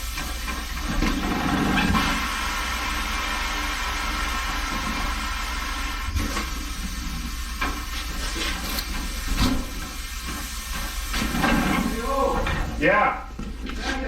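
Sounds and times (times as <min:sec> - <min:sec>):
machine hum with hiss: 0:00.0 - 0:13.5.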